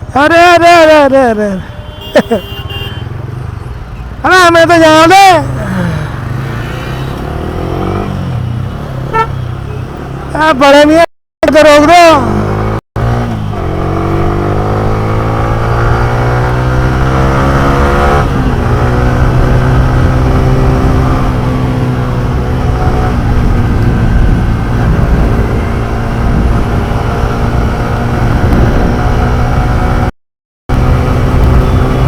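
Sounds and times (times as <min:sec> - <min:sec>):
motorcycle engine accelerating: 0:06.2 - 0:09.3, 0:12.1 - 0:30.1, 0:30.7 - 0:32.0.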